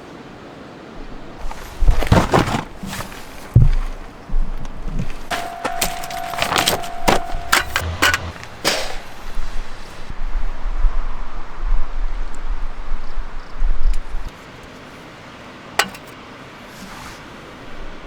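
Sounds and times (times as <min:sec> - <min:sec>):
thin ringing tone: 0:05.3 - 0:09.9.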